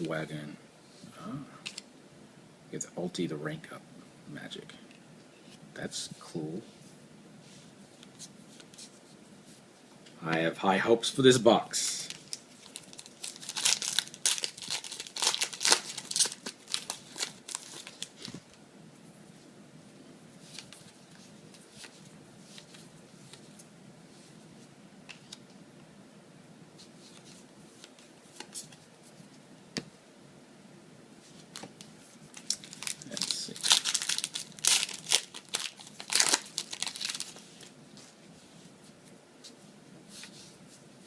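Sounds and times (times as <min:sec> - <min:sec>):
foil pack tearing and crinkling: 0:12.2 - 0:18.2, 0:32.4 - 0:37.3.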